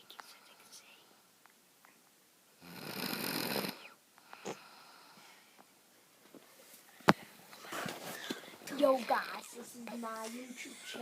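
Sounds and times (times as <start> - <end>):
quiet breathing: 0.0 - 2.0, 3.6 - 5.8, 6.5 - 11.0
person snoring: 2.6 - 5.2.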